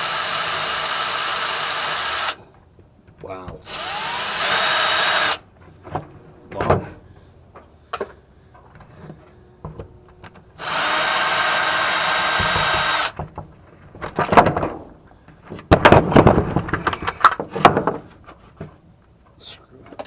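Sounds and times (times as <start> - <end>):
power drill running: 0.0 - 2.4, 3.6 - 5.4, 10.6 - 13.2.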